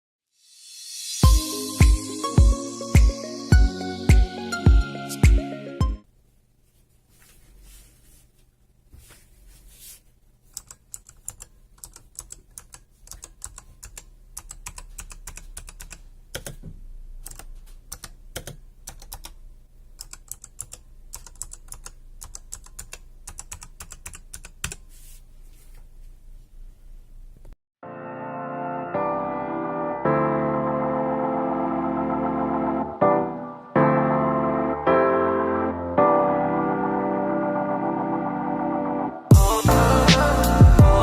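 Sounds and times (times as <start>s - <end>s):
keyboard typing clacking: 10.5s - 16.6s, 17.2s - 19.4s, 20.0s - 24.8s.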